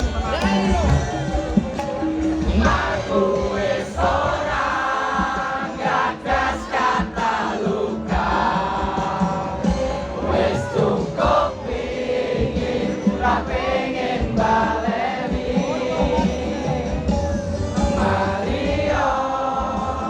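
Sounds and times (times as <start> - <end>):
steady bass beat: 0.0 - 3.1
amplified band music: 0.0 - 20.0
crowd singing in unison: 0.0 - 20.0.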